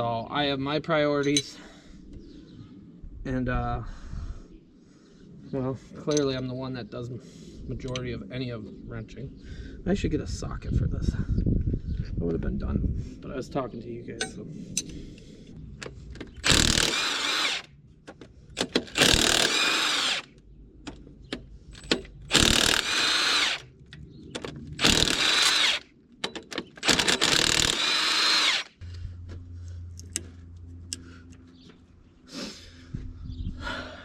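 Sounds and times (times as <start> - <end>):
steady low hum: 0.0 - 34.0
cordless power tool whining: 16.3 - 17.7, 18.6 - 20.3, 21.8 - 23.7, 24.8 - 29.0.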